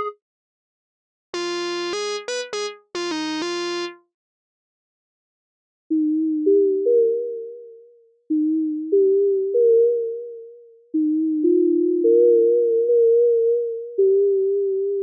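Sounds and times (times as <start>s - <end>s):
mellow synthesizer chords: 1.4s - 4.0s.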